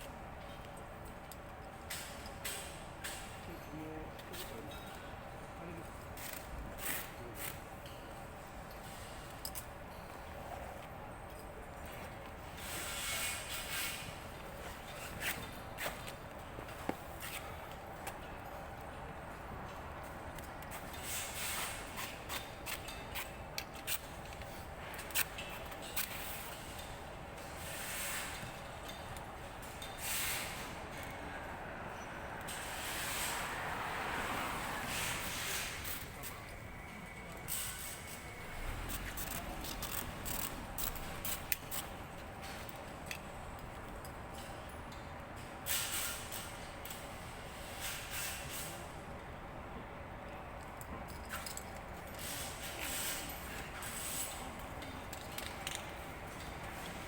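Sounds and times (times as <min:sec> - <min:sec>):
sharp clicks and knocks of tools: 0:08.7 - 0:10.2, 0:19.7 - 0:27.6, 0:38.9 - 0:47.1, 0:50.6 - 0:57.0
irregular clicks and scrapes: 0:38.9 - 0:43.8, 0:51.1 - 0:57.0.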